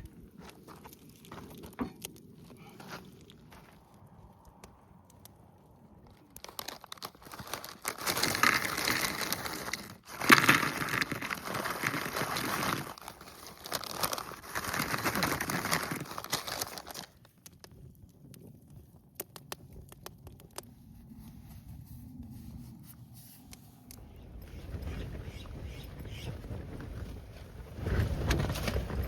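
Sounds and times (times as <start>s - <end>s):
camp gear flapping and crinkling: 0.0s - 4.2s, 5.9s - 18.9s, 24.2s - 29.0s.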